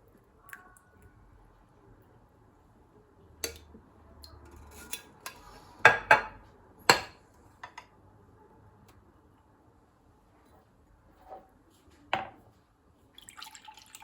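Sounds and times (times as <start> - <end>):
kitchenware clinking: 4.4 - 7.9.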